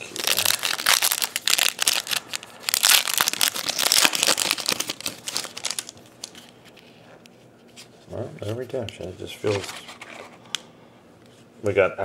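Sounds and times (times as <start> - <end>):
wrapper crinkling and tearing: 0.0 - 6.6.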